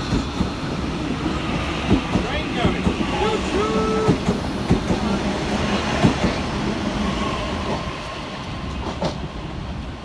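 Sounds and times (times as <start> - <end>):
electric train rumbling: 0.0 - 10.0.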